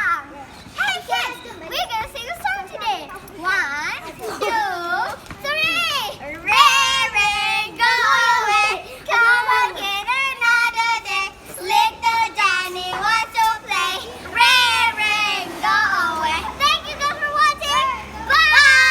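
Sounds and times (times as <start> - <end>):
girls singing together: 4.1 - 18.9.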